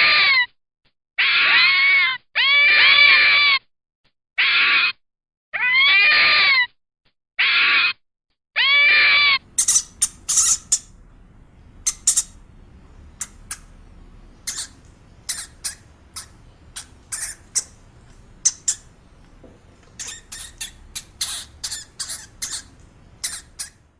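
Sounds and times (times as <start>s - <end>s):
animal drawn-out cries: 0.0s - 0.6s, 1.2s - 3.7s, 4.4s - 5.0s, 5.6s - 6.8s, 7.4s - 8.0s, 8.6s - 11.0s, 14.4s - 19.2s, 19.9s - 23.9s
high irregular squeaks: 9.5s - 11.0s, 11.6s - 23.9s.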